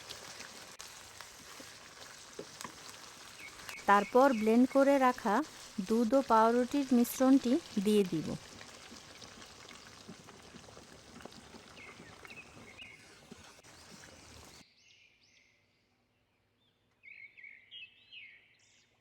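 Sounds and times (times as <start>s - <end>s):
food sizzling in a pan: 0.0s - 14.6s
faint bird chirps: 13.7s - 19.0s.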